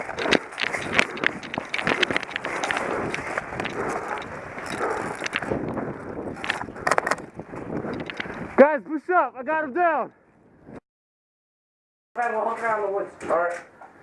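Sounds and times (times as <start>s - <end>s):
footsteps in brush: 0.0s - 8.5s.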